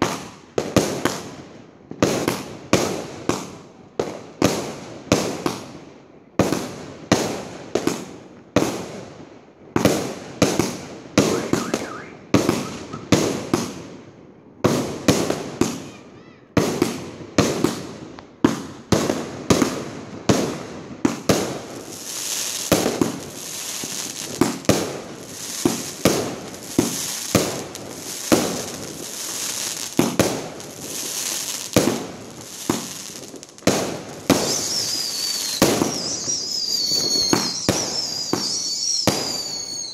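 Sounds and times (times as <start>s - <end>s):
fireworks bangs: 9.7s - 39.9s
falling firework whistle: 11.2s - 13.2s, 22.0s - 39.9s
fireworks hiss: 21.1s - 39.9s.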